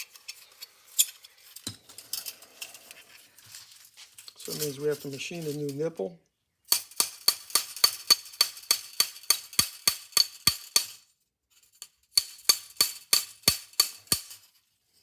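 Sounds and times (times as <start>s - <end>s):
ratchet-like metallic clicking: 6.7s - 11.0s, 12.2s - 14.4s.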